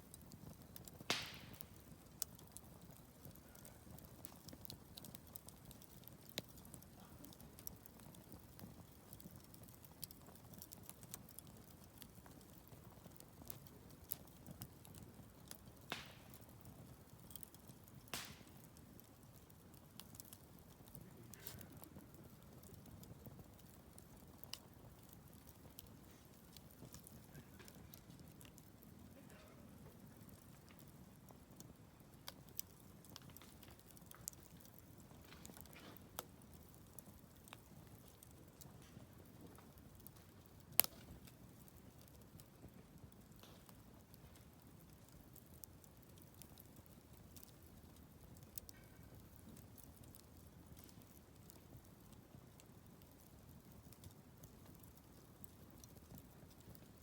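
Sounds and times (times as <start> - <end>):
wood fire crackling: 0.0 - 57.0
loud snap of fire: 0.1 - 8.0, 13.2 - 52.2.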